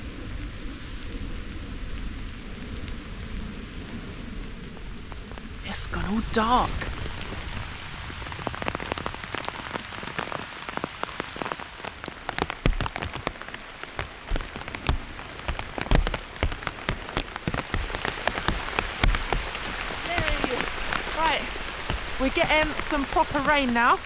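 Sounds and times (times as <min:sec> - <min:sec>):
heavy rain hiss: 0:07.0 - 0:24.0
raindrops tapping: 0:11.5 - 0:24.0.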